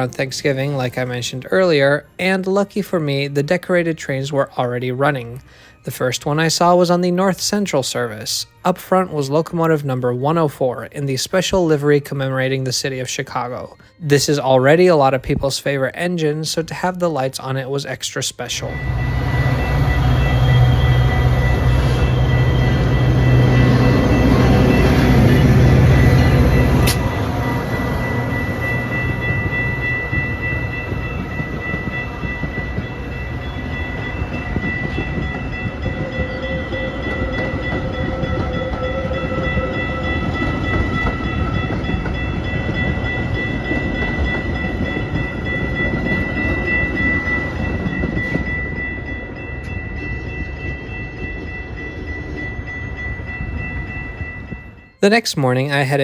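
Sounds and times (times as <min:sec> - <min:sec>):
diesel train passing: 0:17.6 - 0:56.0
high-pitched tones: 0:18.5 - 0:56.0.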